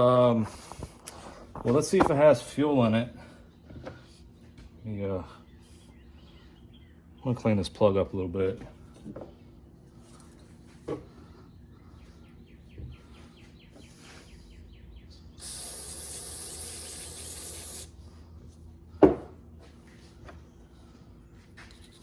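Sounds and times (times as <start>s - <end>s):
steady spraying hiss: 15.4s - 17.9s.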